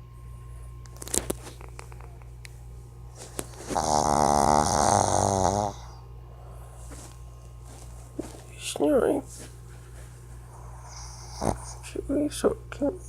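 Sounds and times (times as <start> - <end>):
dog snoring: 3.4 - 6.0, 10.4 - 12.3.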